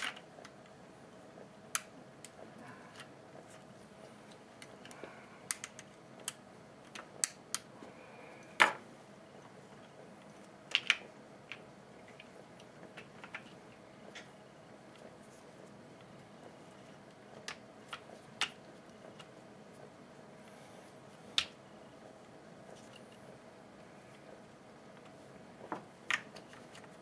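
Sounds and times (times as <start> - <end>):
small parts clicking and tapping: 0.0 - 0.8, 1.7 - 3.7, 4.3 - 7.7, 9.8 - 15.1, 16.7 - 19.4.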